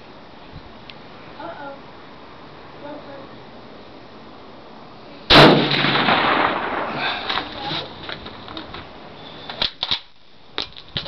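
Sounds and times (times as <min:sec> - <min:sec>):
rifle shot echoing: 0:05.3 - 0:07.5.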